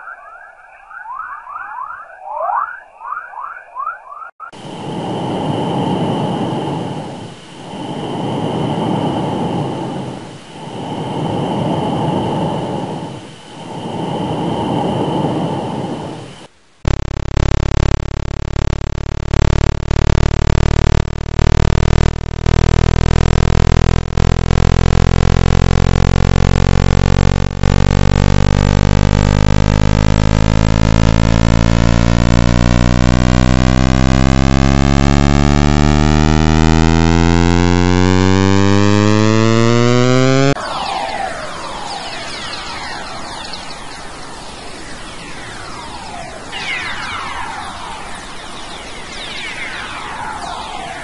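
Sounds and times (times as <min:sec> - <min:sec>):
buzzy electronic drone rising: 0:16.8 - 0:51.0.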